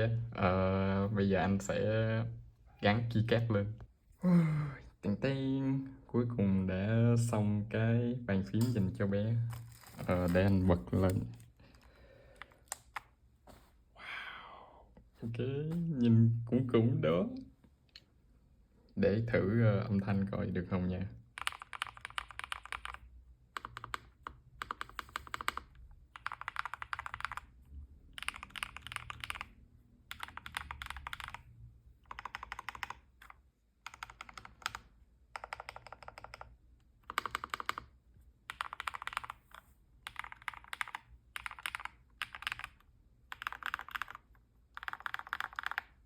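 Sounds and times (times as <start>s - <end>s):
mechanical keyboard clacks: 21.4s - 27.5s, 28.1s - 29.5s, 30.1s - 31.5s, 35.4s - 37.9s, 38.5s - 46.0s.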